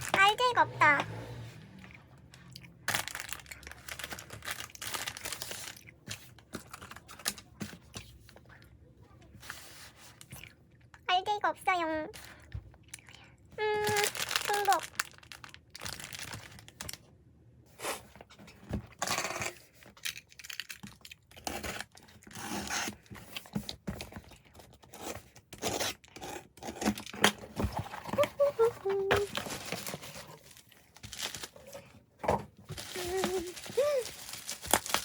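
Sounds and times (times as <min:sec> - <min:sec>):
plastic packaging tearing and crinkling: 0:02.8 - 0:07.6, 0:13.8 - 0:17.0, 0:18.9 - 0:26.0, 0:26.6 - 0:31.9, 0:32.7 - 0:35.0.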